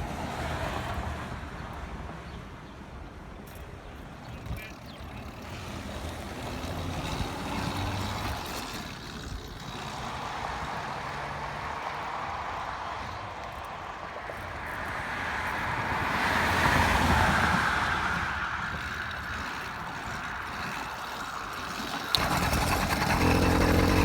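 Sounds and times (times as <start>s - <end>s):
wind buffeting microphone: 1.5s - 24.0s
small engine running: 3.5s - 13.7s, 16.0s - 24.0s.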